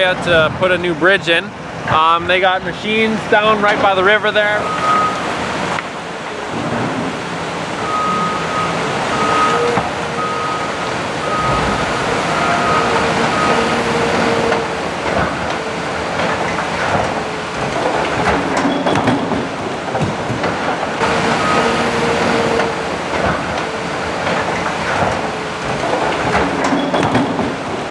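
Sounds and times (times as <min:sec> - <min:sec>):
heavy machinery noise: 0:00.0 - 0:27.9
backup alarm beeping: 0:04.1 - 0:05.3, 0:07.8 - 0:14.6, 0:21.0 - 0:22.6.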